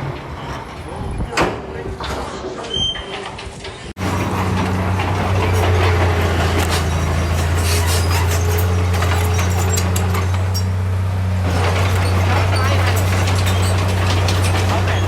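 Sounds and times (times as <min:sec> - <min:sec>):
clanks and rattles: 0:00.0 - 0:15.0
heavy diesel machine engine: 0:03.9 - 0:15.0.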